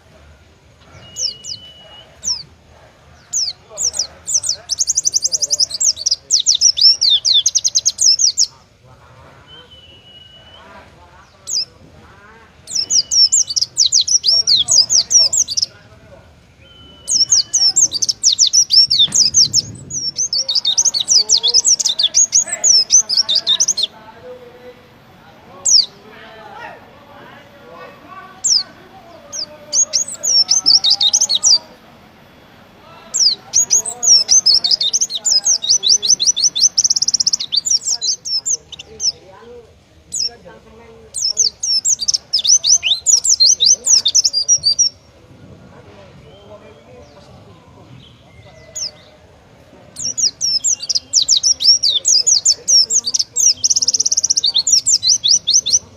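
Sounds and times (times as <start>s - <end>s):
bird rapid high chirping song: 0.8s - 8.6s, 12.5s - 24.0s, 28.4s - 31.8s, 33.1s - 39.2s, 41.1s - 45.1s, 49.9s - 55.9s.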